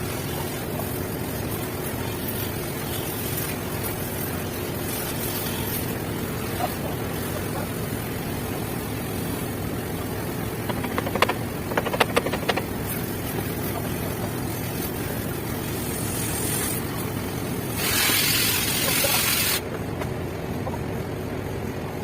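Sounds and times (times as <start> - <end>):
low machine rumble: 0.0 - 17.8
sharp clicks: 10.7 - 12.7
loud hiss: 12.8 - 19.7.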